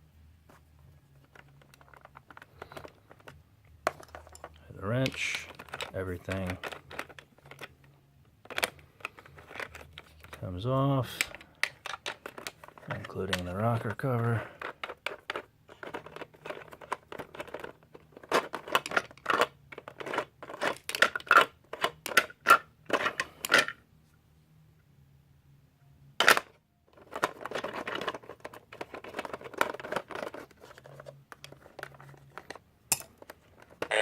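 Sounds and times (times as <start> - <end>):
rustling handling: 0.4 - 24.1, 26.3 - 34.0
plastic toy parts clicking: 4.0 - 10.4, 11.1 - 23.8.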